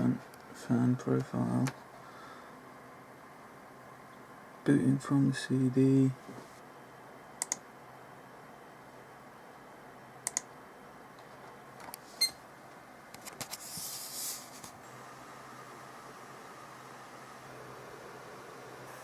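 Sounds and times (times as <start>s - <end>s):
computer cooling fans humming: 0.0s - 19.0s
sharp clicks: 7.4s - 7.6s, 10.2s - 10.5s.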